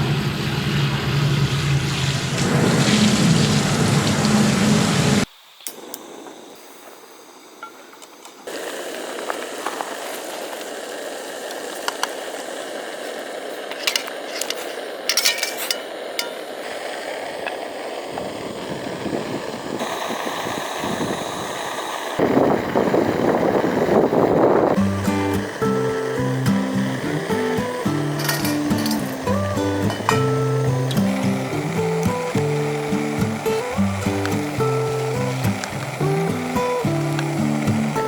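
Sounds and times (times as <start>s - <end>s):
food sizzling: 0.1s - 38.0s
utensils clinking: 13.6s - 16.7s, 24.9s - 38.0s.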